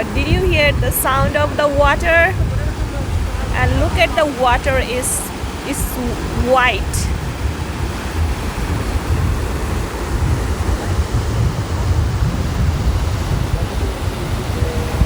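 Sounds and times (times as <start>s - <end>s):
whitewater river rushing: 0.0s - 11.3s
wind buffeting microphone: 0.0s - 15.0s.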